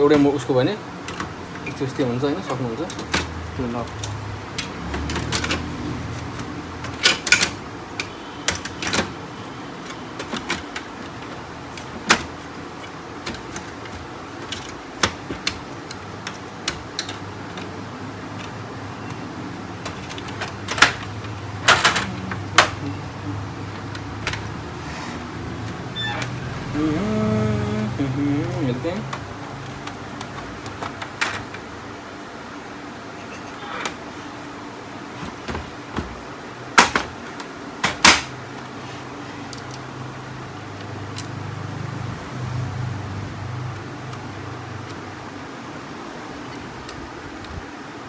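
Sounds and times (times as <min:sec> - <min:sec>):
plastic panels clicking and snapping: 0:01.0 - 0:26.8, 0:28.3 - 0:32.0, 0:35.2 - 0:38.8, 0:39.4 - 0:39.9.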